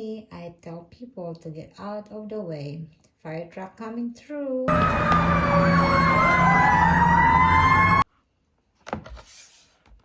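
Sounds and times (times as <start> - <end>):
fire truck siren: 4.7 - 8.1.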